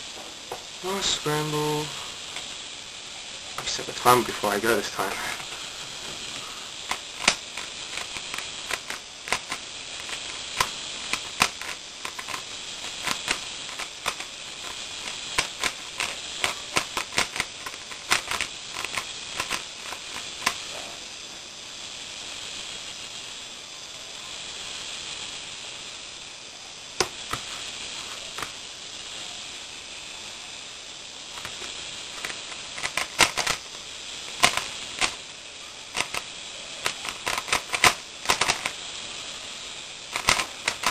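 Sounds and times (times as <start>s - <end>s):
puzzle cube clicking: 6.8s - 20.6s, 31.4s - 33.6s, 34.3s - 35.2s, 36.0s - 38.8s, 40.2s - 40.9s.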